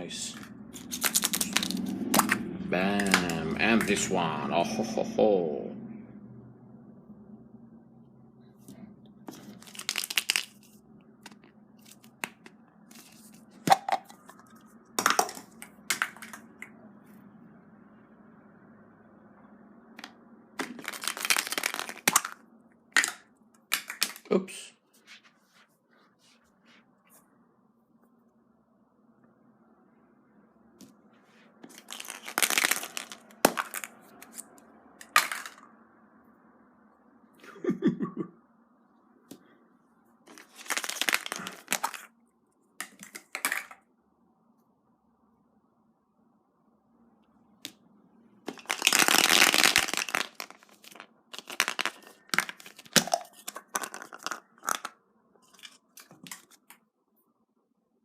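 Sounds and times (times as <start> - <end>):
eggs cracking and crinkling: 0.3 - 4.1, 9.3 - 16.6, 20.0 - 24.3, 31.6 - 35.6, 40.3 - 42.2, 42.8 - 43.8, 48.5 - 56.8
egg cracking and snapping: 0.8 - 2.4.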